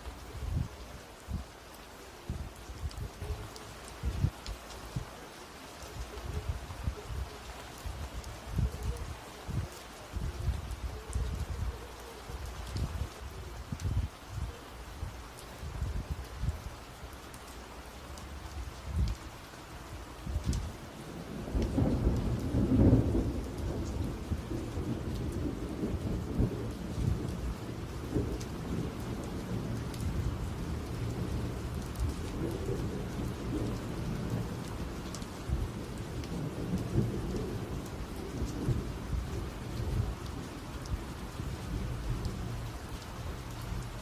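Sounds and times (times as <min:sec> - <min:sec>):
heavy rain: 0:00.0 - 0:44.0
thunder rumbling: 0:20.2 - 0:44.0.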